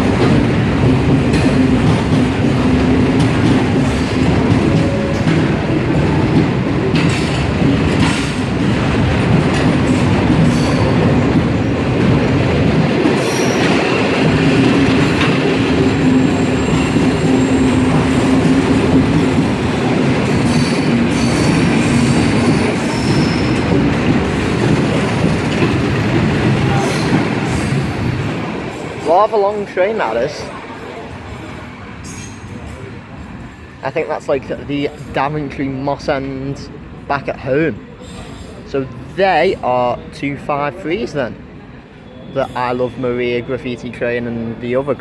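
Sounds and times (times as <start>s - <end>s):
freight train rumbling past: 0.0s - 45.0s
train wheel squeals: 9.8s - 11.2s, 13.1s - 19.5s, 20.2s - 25.6s, 26.3s - 28.0s, 30.5s - 33.7s, 37.8s - 39.6s, 41.9s - 43.6s.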